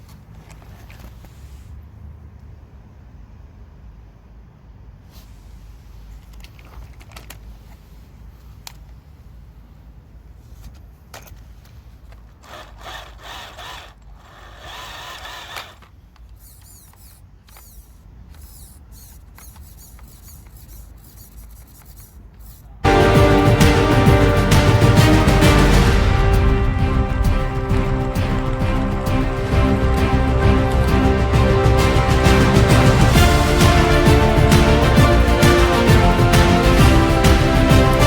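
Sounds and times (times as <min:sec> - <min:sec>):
clicks and ticks from toy car: 0:06.2 - 0:07.8, 0:10.6 - 0:22.8.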